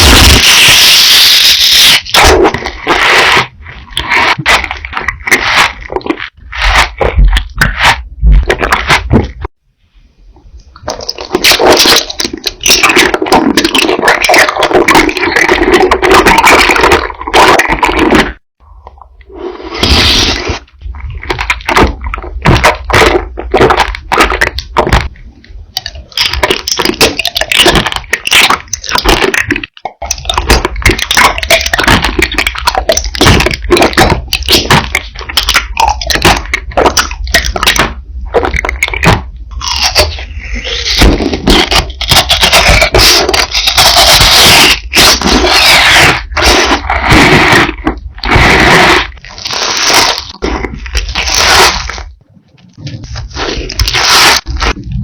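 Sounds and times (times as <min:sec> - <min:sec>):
crunching and chewing: 0:02.2 - 0:09.5, 0:25.7 - 0:55.0.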